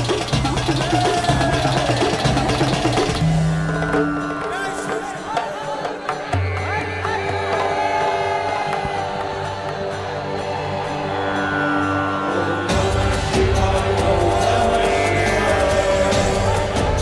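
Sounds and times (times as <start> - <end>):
wavering melodic lines: 0.0 - 6.2.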